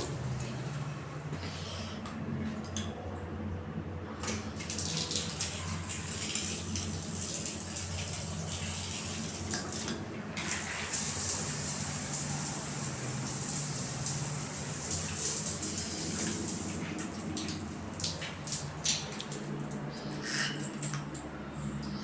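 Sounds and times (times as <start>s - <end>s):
water running from tap: 4.6s - 19.8s.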